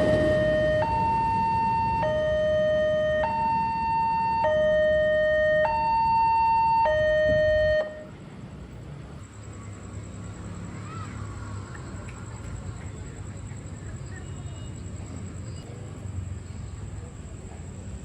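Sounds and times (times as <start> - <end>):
two-tone crossing alarm: 0.0 - 8.2
low background noise: 0.0 - 18.0.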